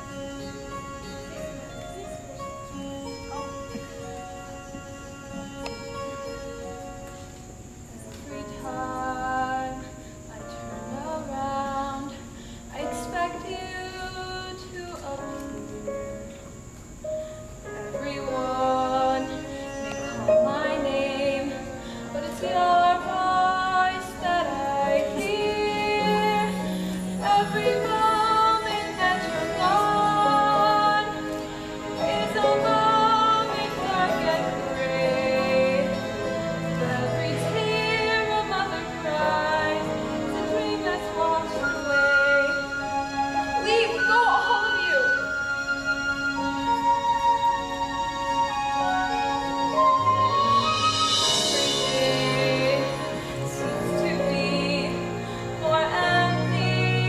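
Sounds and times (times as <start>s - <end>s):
instrumental accompaniment: 0.0s - 12.0s, 12.8s - 57.0s
woman singing a slow ballad: 8.0s - 16.4s, 17.8s - 42.9s, 43.5s - 45.4s, 50.9s - 57.0s.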